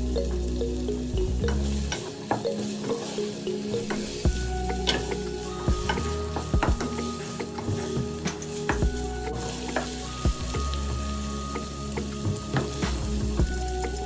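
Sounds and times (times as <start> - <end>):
background music: 0.0 - 14.0
food sizzling in a pan: 1.5 - 14.0.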